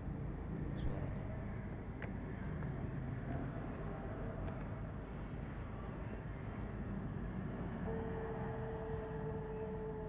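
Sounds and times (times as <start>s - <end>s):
steady tone: 7.8s - 10.0s.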